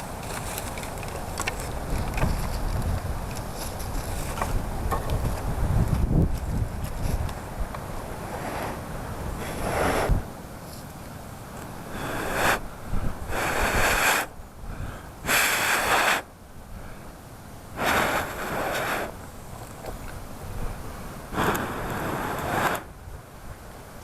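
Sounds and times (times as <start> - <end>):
wind hiss: 0.0 - 24.0
person blowing forceful breaths: 8.2 - 10.3, 11.8 - 17.1, 17.8 - 19.2, 21.3 - 23.0.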